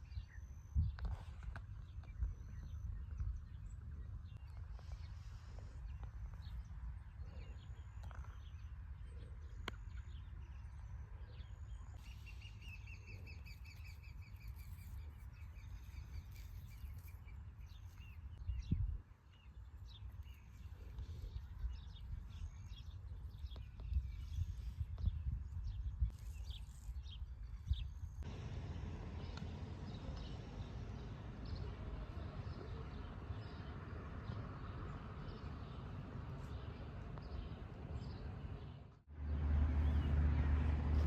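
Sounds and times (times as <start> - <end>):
small birds chirping: 0.0 - 39.0
low rumble: 28.2 - 41.0.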